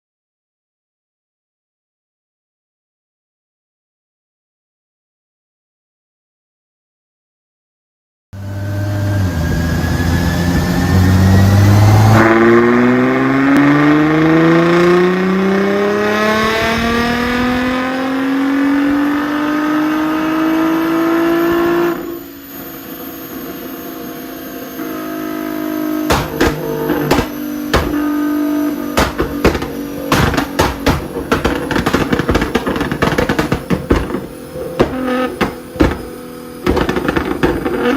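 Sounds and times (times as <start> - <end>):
sports car engine revving: 8.4 - 37.9
drum beat: 29.0 - 36.1.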